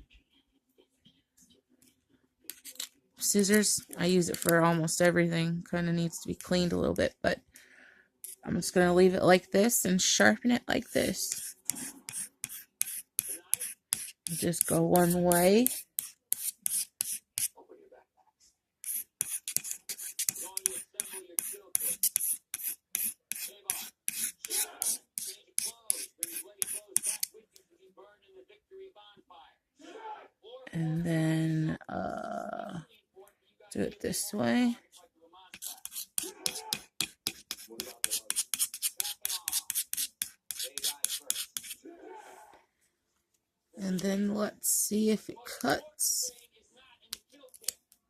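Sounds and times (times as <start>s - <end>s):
scissor blade scraping honing rod: 11.2s - 17.5s, 18.8s - 27.3s, 35.6s - 41.8s.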